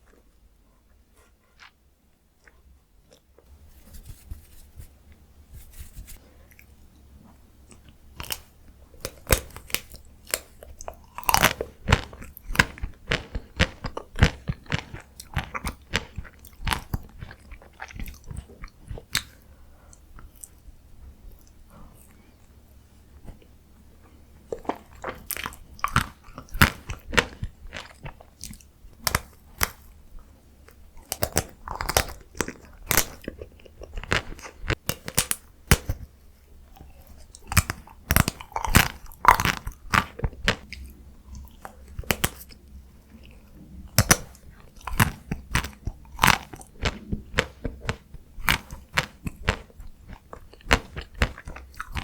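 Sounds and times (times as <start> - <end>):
soft chewing: 0.0 - 52.0
chocolate shell crunching: 8.2 - 19.4, 30.7 - 36.1, 36.7 - 52.0.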